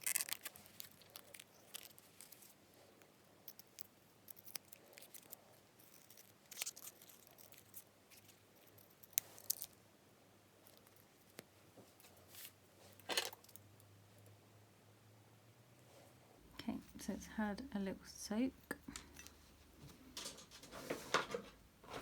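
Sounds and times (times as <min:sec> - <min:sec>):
small clicks and rustles of handling: 0:00.0 - 0:09.8, 0:10.6 - 0:14.4, 0:18.8 - 0:22.0.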